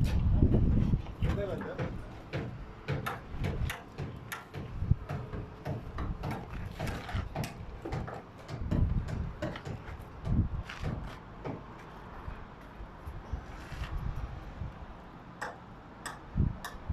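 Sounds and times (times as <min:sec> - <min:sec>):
irregular clicks and knocks: 0:01.2 - 0:11.9, 0:15.4 - 0:16.8.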